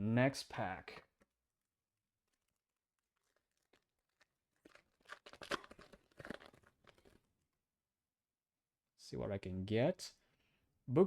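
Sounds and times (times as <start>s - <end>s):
foil wrapper tearing and crinkling: 2.2s - 7.2s.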